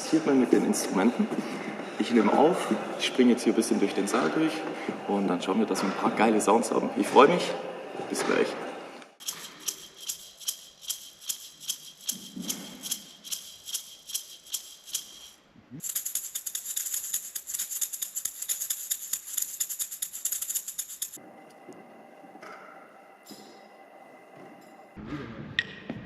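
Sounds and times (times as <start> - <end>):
shaker shaking: 9.2 - 21.2.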